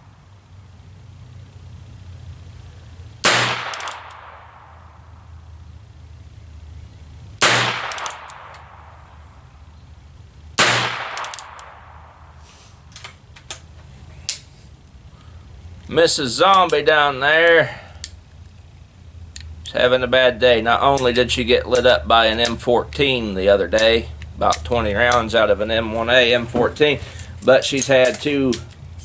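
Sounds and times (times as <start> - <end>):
revolver shots: 3.2 - 5.6, 7.4 - 9.8, 10.5 - 13.4
light clicks: 3.6 - 4.4, 7.8 - 8.8, 11.0 - 11.8, 12.8 - 19.8.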